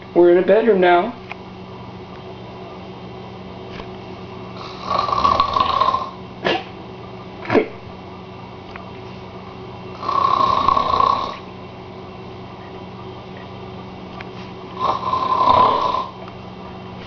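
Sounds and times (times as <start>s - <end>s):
steady low hum: 0.0s - 17.0s
man snoring: 4.6s - 6.2s, 9.9s - 11.5s, 14.8s - 16.2s.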